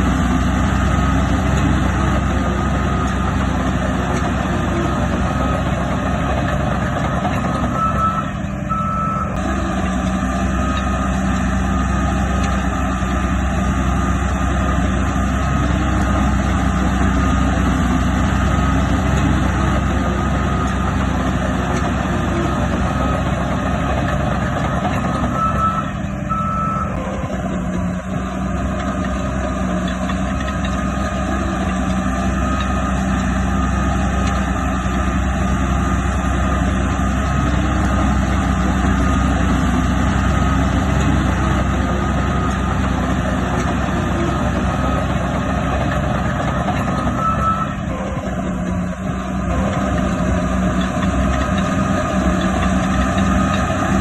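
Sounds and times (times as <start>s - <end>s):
heavy diesel machinery running: 0.0s - 54.0s
backup alarm beeping: 7.6s - 9.4s, 25.2s - 27.2s, 46.8s - 48.4s.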